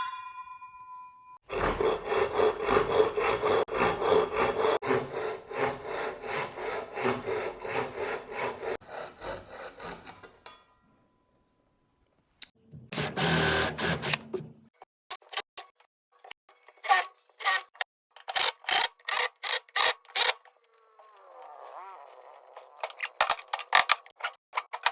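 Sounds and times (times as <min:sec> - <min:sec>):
pull saw cutting wood: 0:01.5 - 0:10.6, 0:12.9 - 0:14.4.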